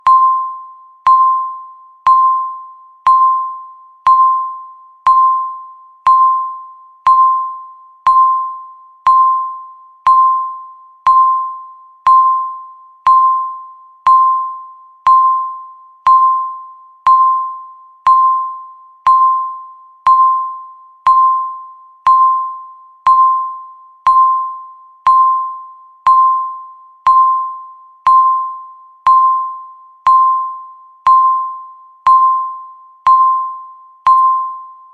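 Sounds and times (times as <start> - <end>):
countdown timer beeping: 0.0 - 34.9.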